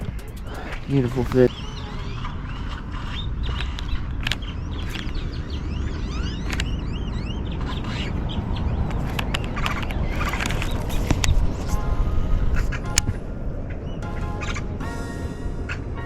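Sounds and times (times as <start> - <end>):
low rumble: 0.0 - 7.5
small birds chirping: 0.0 - 13.1
sharp clicks: 2.7 - 6.9, 8.8 - 11.8.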